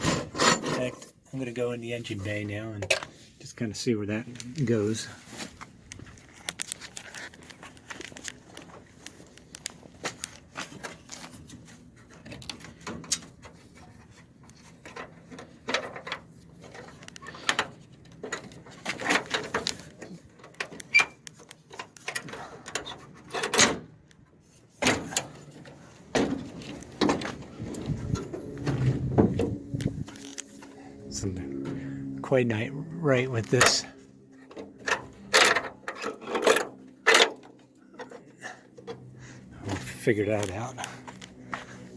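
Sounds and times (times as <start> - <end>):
metal parts clanking and rattling: 0.0 - 1.1, 14.6 - 23.8, 24.8 - 30.8, 33.1 - 33.9, 34.5 - 41.0.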